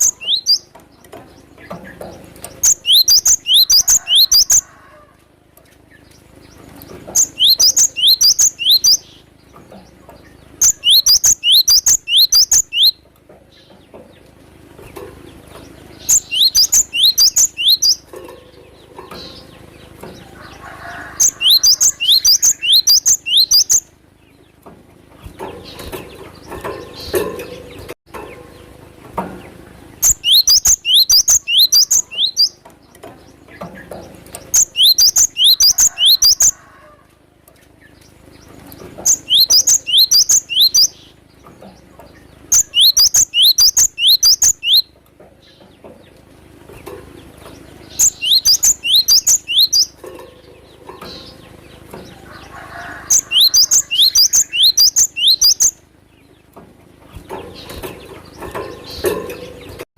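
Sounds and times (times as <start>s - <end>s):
bird singing sharp repeated notes: 0.0s - 4.6s, 7.1s - 13.9s, 15.3s - 18.1s, 21.2s - 24.4s, 29.4s - 36.6s, 38.7s - 45.8s, 47.4s - 52.0s, 53.0s - 56.3s
faint bird chirping: 0.0s - 5.0s, 5.6s - 28.8s, 29.4s - 36.8s, 37.8s - 59.9s.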